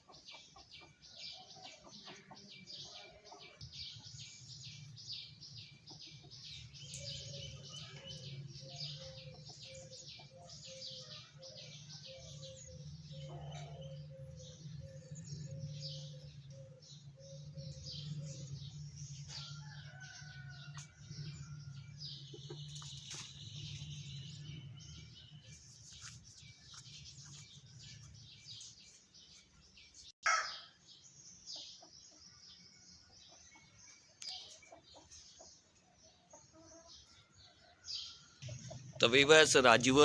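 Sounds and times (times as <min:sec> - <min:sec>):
chickens clucking: 0:00.0 - 0:04.1, 0:05.7 - 0:17.1, 0:33.3 - 0:37.8, 0:38.4 - 0:39.4
small birds chirping: 0:00.0 - 0:40.0.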